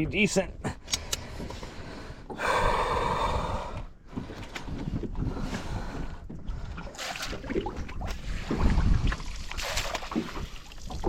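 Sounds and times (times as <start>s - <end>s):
wind rumbling on microphone: 0.0s - 11.0s
person breathing out heavily: 1.0s - 4.3s.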